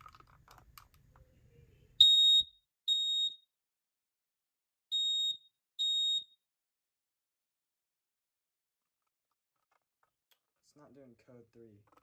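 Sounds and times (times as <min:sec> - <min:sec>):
smoke alarm beeping: 0:02.0 - 0:03.5, 0:04.9 - 0:06.4.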